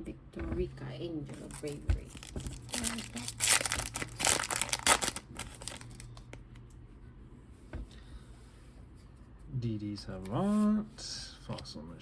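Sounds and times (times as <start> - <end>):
wrapper crinkling and tearing: 1.5 - 6.3.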